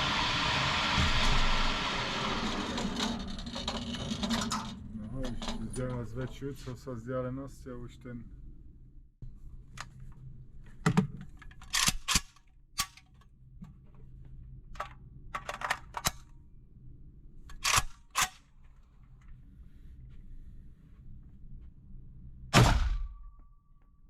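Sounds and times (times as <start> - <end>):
low steady hum: 4.3 - 11.8, 18.4 - 24.0.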